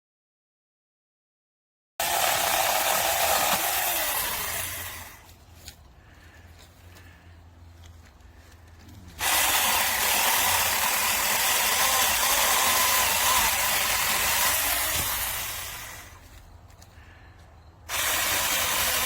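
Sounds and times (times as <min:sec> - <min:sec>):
electric chainsaw whining: 0:02.0 - 0:05.3, 0:09.2 - 0:16.4, 0:17.9 - 0:19.0.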